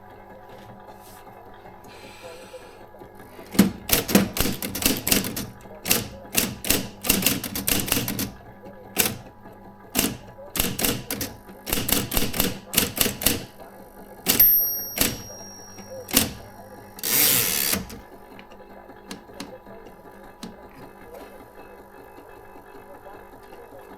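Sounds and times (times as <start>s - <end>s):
typewriter motor hum: 3.3s - 9.3s, 9.9s - 13.6s, 14.3s - 18.1s
typewriter carriage return: 3.3s - 13.6s, 14.3s - 21.0s
typewriter keys clicking: 3.4s - 9.3s, 10.0s - 13.6s, 14.3s - 18.1s, 19.1s - 19.6s
high ringing bell tone: 14.3s - 17.8s.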